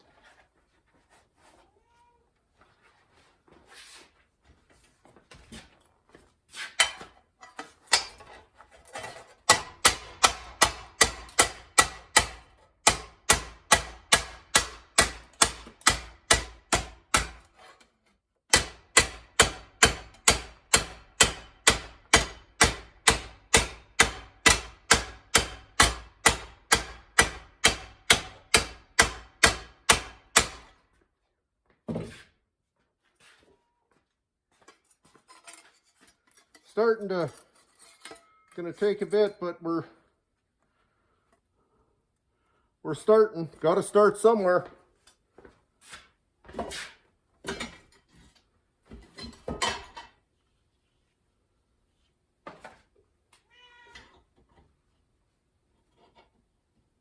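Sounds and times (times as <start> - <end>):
hammer beating sheet steel: 9.5 - 17.5, 18.5 - 30.7.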